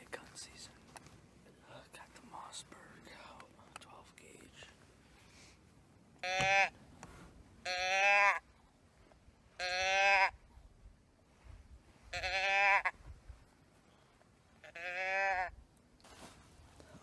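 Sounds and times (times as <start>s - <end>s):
nasal bleats: 6.2s - 6.7s, 7.6s - 8.4s, 9.6s - 10.4s, 12.1s - 13.0s, 14.6s - 15.5s.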